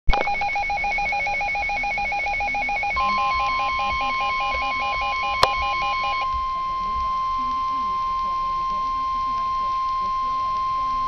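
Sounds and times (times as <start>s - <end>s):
fast warbling electronic beeping: 0.1s - 6.3s
steady single-pitched alarm tone: 0.2s - 7.4s.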